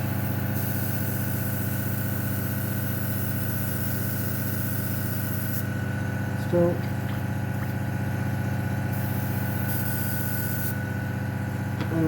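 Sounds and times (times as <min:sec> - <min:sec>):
airbrush air hiss: 0:00.0 - 0:05.7, 0:08.9 - 0:10.9
compressor humming: 0:00.0 - 0:12.0.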